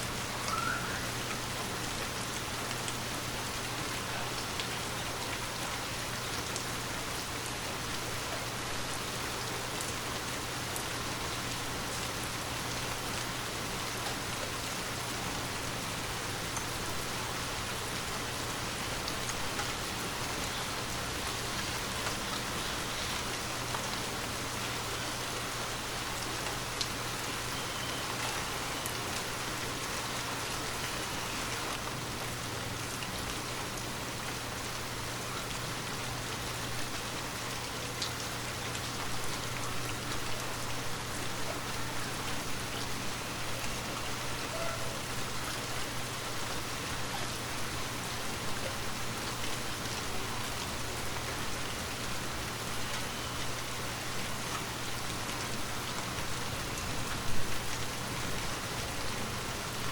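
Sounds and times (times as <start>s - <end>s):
raindrops ticking on a surface: 0.0s - 59.9s
steady rain falling: 0.0s - 59.9s.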